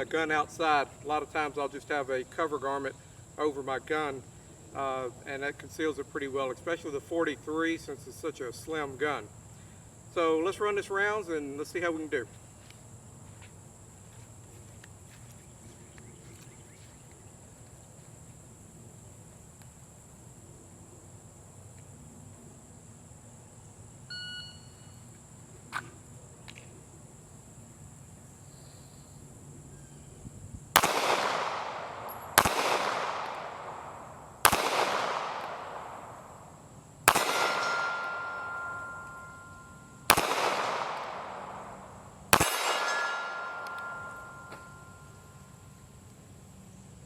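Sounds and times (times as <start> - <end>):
pistol shots echoing: 30.8 - 36.4, 37.0 - 45.1
steel target ringing: 37.1 - 41.6, 42.4 - 45.6.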